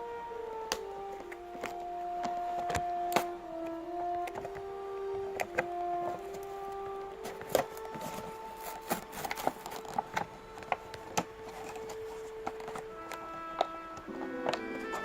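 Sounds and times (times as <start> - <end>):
soft orchestral music: 0.0 - 15.0
toy packaging being opened: 5.4 - 15.0.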